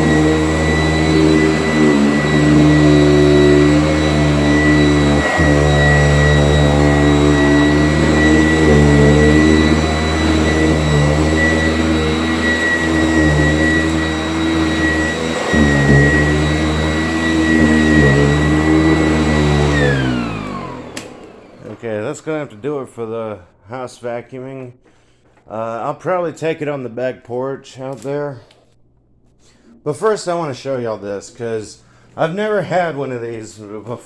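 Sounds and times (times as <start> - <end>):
upright vacuum cleaner whining: 0.0 - 23.5.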